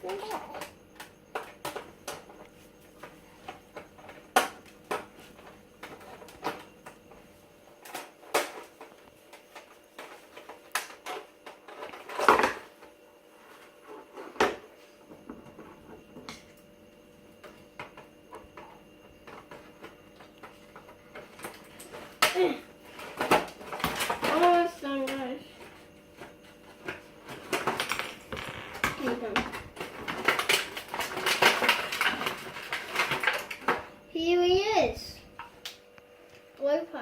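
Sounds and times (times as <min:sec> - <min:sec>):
packaging crackle: 0:26.9 - 0:33.7.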